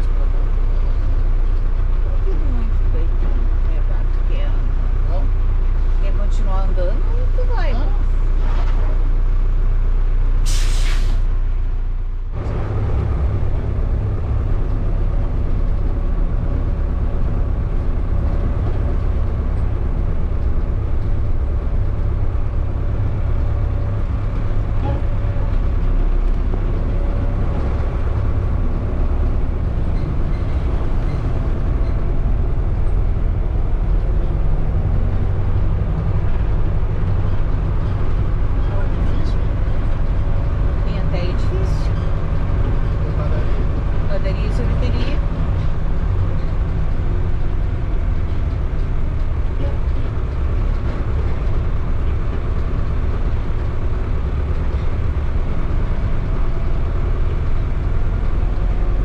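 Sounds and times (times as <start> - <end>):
engine and road rumble: 0.0 - 59.0
short hiss: 10.4 - 11.3.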